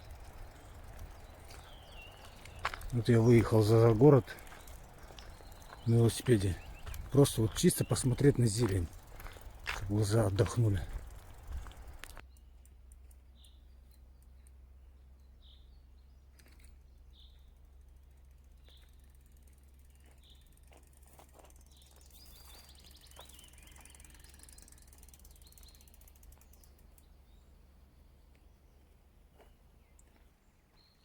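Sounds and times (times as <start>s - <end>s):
ticking and trilling: 0.0s - 12.2s
faint clicks: 8.6s - 14.6s.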